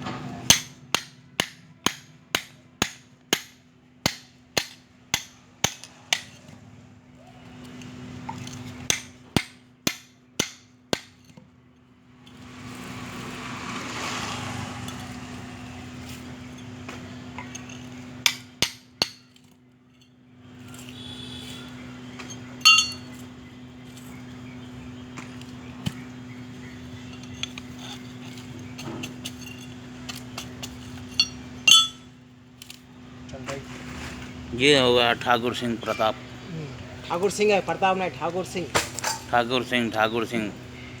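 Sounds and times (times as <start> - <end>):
hammer striking metal: 0.5 - 6.4, 8.9 - 11.2, 22.6 - 23.1, 31.1 - 32.1.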